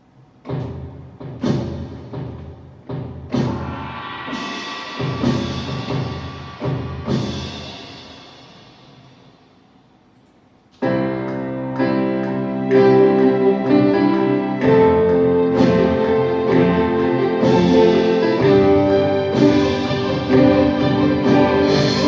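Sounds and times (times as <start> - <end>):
orchestral strings and horns: 11.8 - 22.0.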